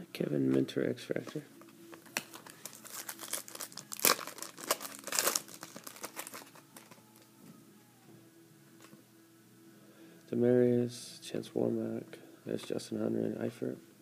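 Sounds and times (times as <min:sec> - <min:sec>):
plastic wrapper crinkling and tearing: 0:01.9 - 0:07.3.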